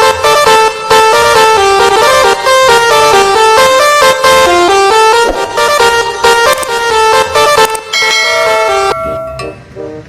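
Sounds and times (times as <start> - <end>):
musical bus air horn: 0.0 - 8.0.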